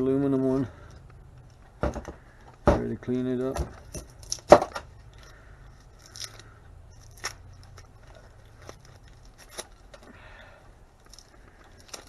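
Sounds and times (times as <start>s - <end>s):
wire clicks and scrapes: 3.8s - 10.1s, 11.0s - 12.0s.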